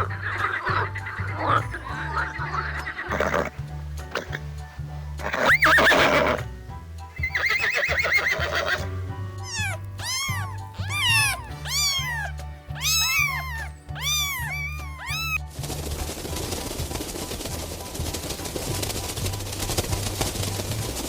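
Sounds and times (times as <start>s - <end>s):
background music: 0.0s - 21.0s
animal high-pitched calls: 5.2s - 6.4s, 7.2s - 15.4s
animal wavering cry: 5.3s - 6.4s, 7.2s - 15.4s.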